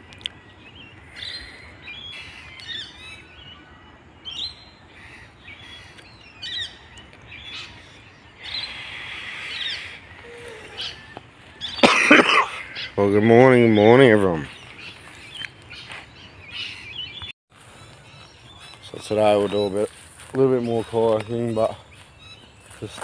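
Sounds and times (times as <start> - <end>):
birds chirping and calling: 0.0 - 23.0.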